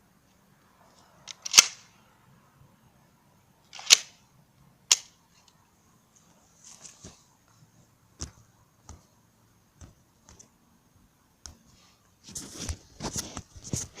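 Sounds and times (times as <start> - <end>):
rustling: 5.3 - 7.9.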